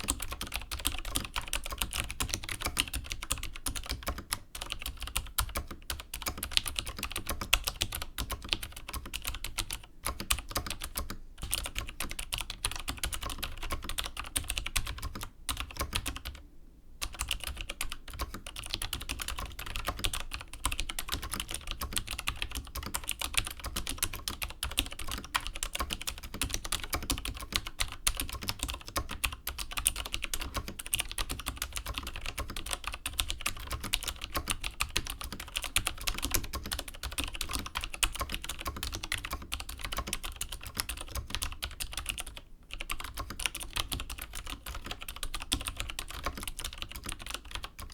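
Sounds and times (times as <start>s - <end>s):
clicky keyboard typing: 0.0s - 16.4s, 17.0s - 47.9s.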